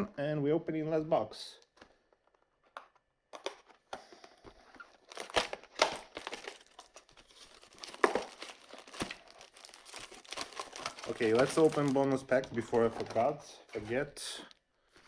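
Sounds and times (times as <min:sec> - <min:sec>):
packaging crinkling and tearing: 0:04.6 - 0:13.4.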